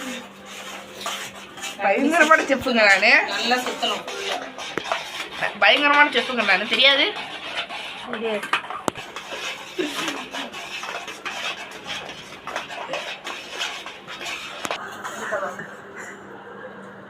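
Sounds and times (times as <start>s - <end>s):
spoon scraping a pot: 0.0s - 15.7s.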